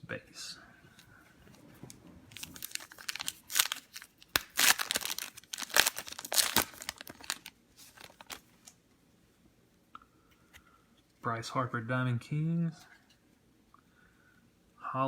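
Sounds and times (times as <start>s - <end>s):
foil wrapper tearing and crumpling: 2.3s - 8.5s.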